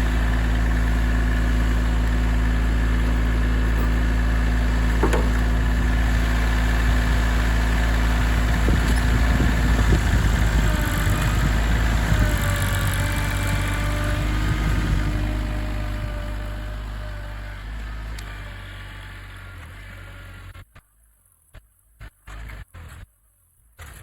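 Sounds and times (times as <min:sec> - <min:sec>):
tractor engine running: 0:00.0 - 0:20.5
rattling and knocking: 0:04.8 - 0:05.8.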